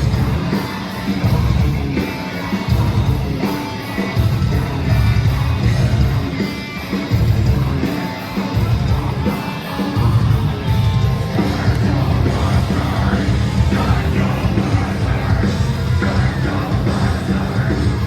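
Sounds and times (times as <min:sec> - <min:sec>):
heavy bass: 0:00.0 - 0:06.4, 0:07.0 - 0:18.0
distorted electric guitars: 0:00.0 - 0:18.0
pounding drums: 0:09.9 - 0:18.0.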